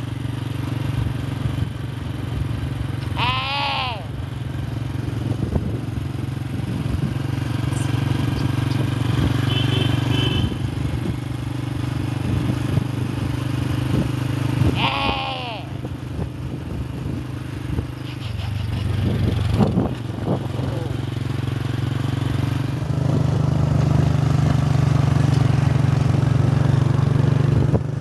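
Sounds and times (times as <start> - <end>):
small engine droning: 0.0 - 28.0
bleat-like animal call: 3.1 - 4.2, 14.7 - 15.8.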